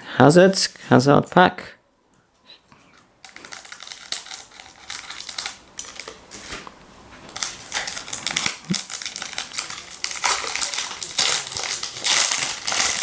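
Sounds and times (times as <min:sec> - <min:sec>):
foil wrapper tearing and crinkling: 0:03.2 - 0:06.7, 0:07.3 - 0:13.0.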